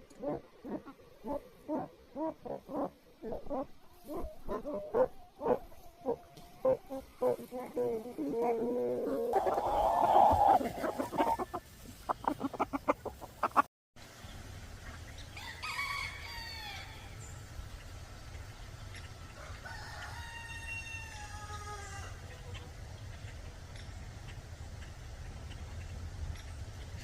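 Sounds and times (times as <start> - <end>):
chickens clucking: 0.0 - 13.7, 17.7 - 27.0
rooster crowing: 15.4 - 17.2, 19.4 - 22.2.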